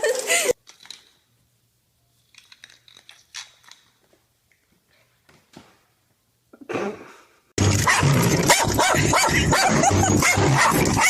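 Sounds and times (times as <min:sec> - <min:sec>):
dog barking rapidly: 0:07.6 - 0:11.0.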